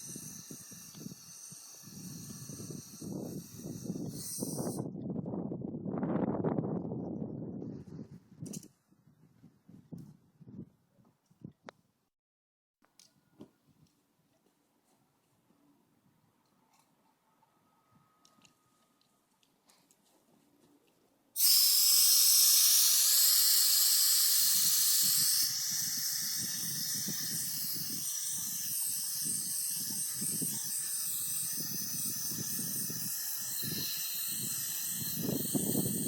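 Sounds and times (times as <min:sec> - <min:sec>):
jet engine hissing: 0:00.0 - 0:04.8, 0:21.4 - 0:36.0.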